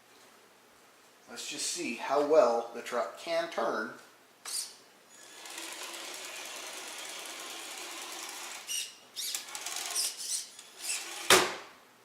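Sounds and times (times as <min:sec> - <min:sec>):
toy truck motor whirring: 0:05.1 - 0:11.4.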